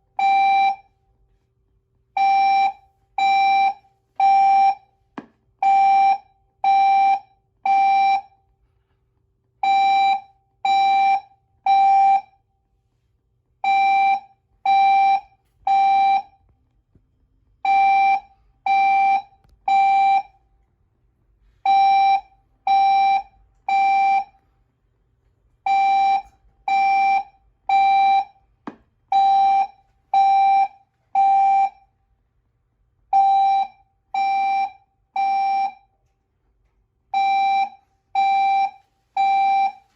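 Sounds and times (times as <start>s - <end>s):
fire alarm horn: 0.1s - 1.0s, 2.2s - 5.0s, 5.6s - 8.4s, 9.6s - 12.4s, 13.6s - 16.4s, 17.6s - 20.4s, 21.7s - 24.4s, 25.7s - 28.4s, 29.1s - 31.9s, 33.1s - 35.9s, 37.2s - 39.9s.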